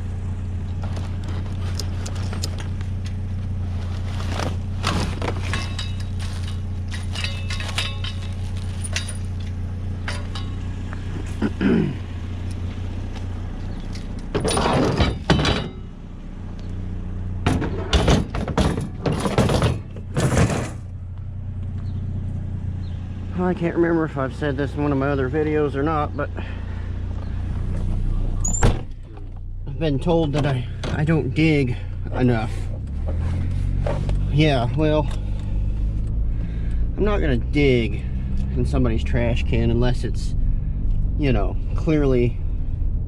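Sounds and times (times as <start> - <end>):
truck engine humming: 0.0 - 43.0
metal clanking and banging: 4.4 - 10.7, 13.9 - 15.9, 17.4 - 20.9
short falling squeak: 28.4 - 28.9.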